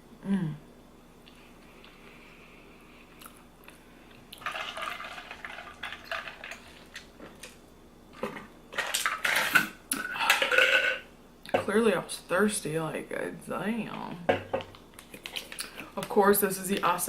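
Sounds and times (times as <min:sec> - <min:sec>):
liquid sloshing: 0:04.3 - 0:07.6.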